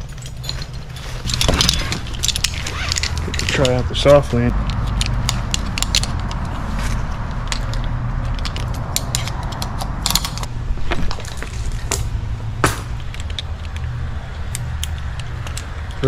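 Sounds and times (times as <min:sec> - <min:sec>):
low mechanical hum: 0:00.0 - 0:16.0
sharp clicks and knocks: 0:04.5 - 0:16.0.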